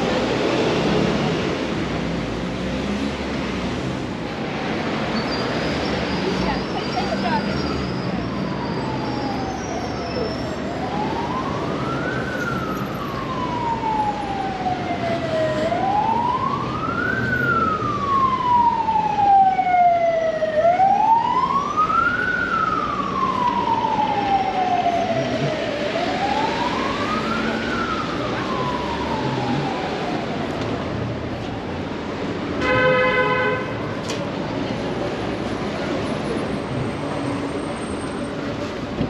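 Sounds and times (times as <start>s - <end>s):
street traffic: 0.0s - 39.0s
second siren: 6.2s - 31.1s
emergency siren wailing: 6.2s - 32.0s.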